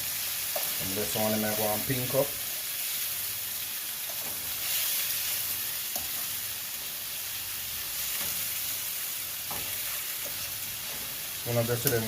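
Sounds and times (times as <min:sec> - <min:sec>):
shrimp sizzling in a pan: 0:00.0 - 0:12.0.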